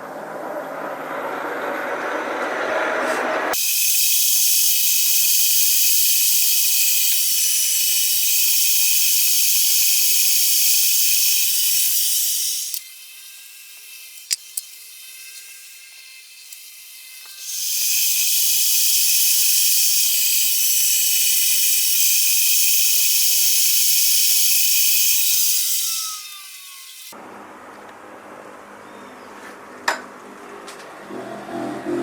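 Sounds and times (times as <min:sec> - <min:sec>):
milling cutter hissing: 0:03.5 - 0:27.2.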